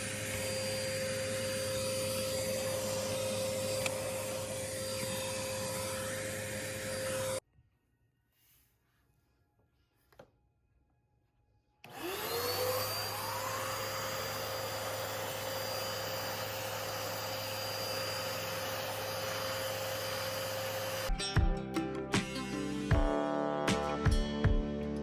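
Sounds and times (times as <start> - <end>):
vacuum cleaner air rushing: 0.0 - 7.4, 11.9 - 21.1
vacuum cleaner motor whine: 0.0 - 7.4, 11.8 - 21.1.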